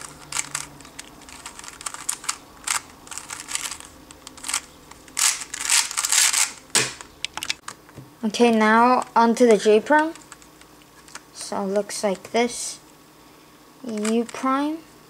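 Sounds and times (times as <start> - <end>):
puzzle cube plastic clicks: 0.0 - 7.7, 13.8 - 14.4.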